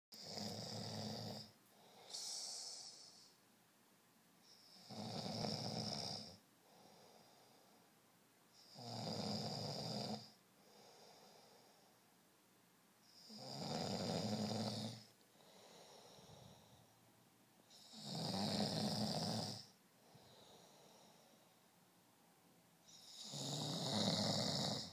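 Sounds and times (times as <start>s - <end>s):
person snoring: 0.2s - 3.4s, 4.5s - 7.8s, 8.6s - 11.8s, 13.2s - 16.9s, 17.7s - 21.5s, 22.9s - 24.9s
soft breathing: 0.2s - 3.5s, 6.2s - 8.7s, 10.2s - 12.2s, 14.8s - 18.0s, 19.6s - 23.4s.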